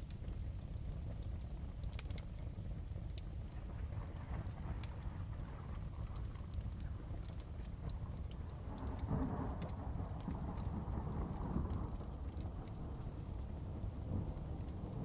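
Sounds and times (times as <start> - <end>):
fireplace crackling and popping: 0.0 - 15.0
heavy rain: 3.5 - 15.0
low thunder rumble: 3.5 - 15.0.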